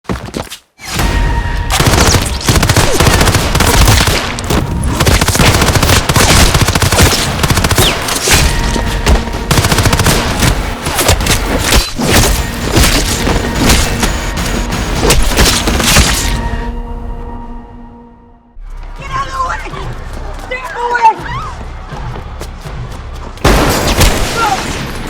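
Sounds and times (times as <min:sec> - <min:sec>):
automatic gunfire bursts: 0:01.8 - 0:04.4, 0:05.0 - 0:08.2, 0:09.5 - 0:10.8.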